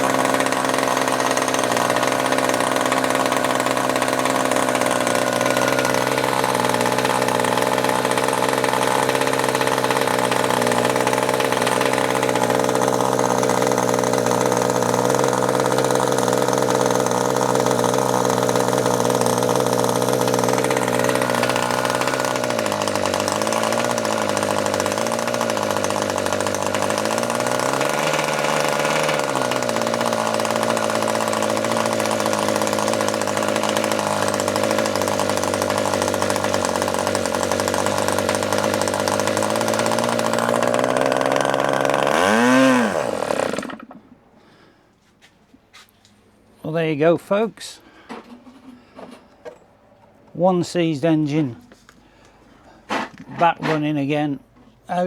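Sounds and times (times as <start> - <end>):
model engine buzzing: 0.0 - 44.0.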